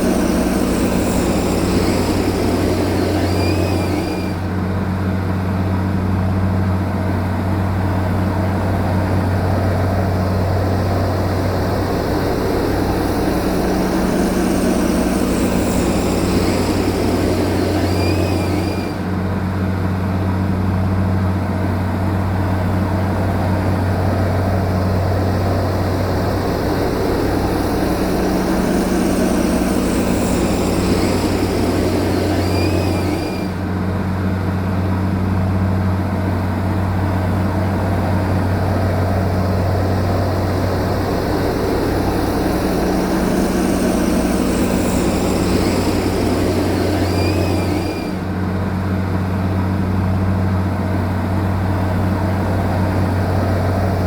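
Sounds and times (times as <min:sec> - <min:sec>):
short high squeak: 0:00.0 - 0:04.5, 0:12.8 - 0:19.1, 0:27.3 - 0:33.7, 0:41.6 - 0:48.3
bulldozer diesel engine running: 0:00.0 - 0:54.0.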